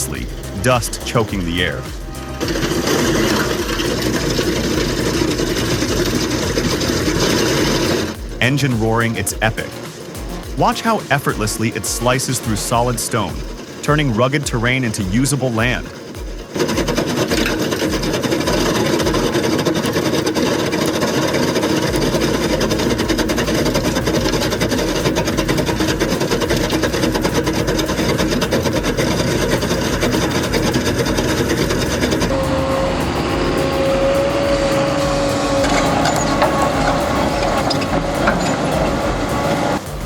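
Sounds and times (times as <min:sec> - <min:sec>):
heavy diesel machinery grinding: 0:00.0 - 0:40.0
steady whine: 0:00.0 - 0:40.0.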